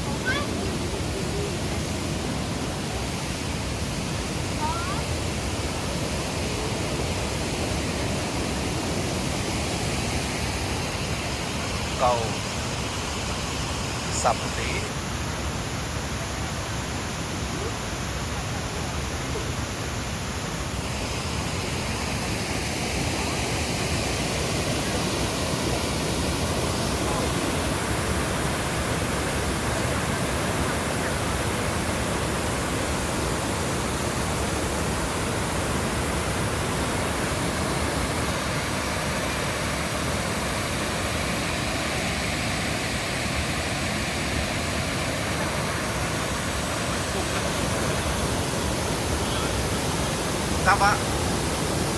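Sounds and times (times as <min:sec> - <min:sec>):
waterfall rushing and splashing: 0:00.0 - 0:51.9.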